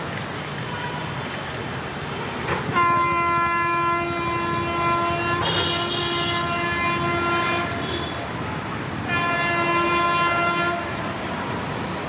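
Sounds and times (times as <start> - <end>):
train rail noise rushing: 0.0 - 12.0
locomotive air horn blast: 2.7 - 8.3, 9.0 - 11.0.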